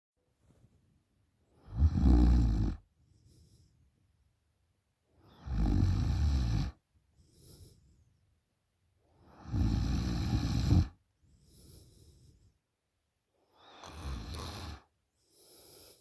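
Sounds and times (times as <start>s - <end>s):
woman snoring: 1.6s - 2.8s, 5.3s - 6.8s, 9.3s - 11.0s, 13.6s - 14.9s
faint breath: 3.0s - 4.0s, 7.1s - 8.2s, 11.2s - 12.7s, 13.4s - 16.0s.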